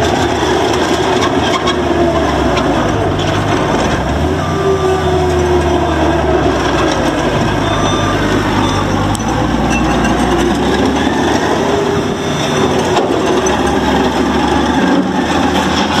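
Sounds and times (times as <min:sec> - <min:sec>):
diesel engine running: 0:00.0 - 0:16.0
rattling mechanical clatter: 0:06.6 - 0:16.0.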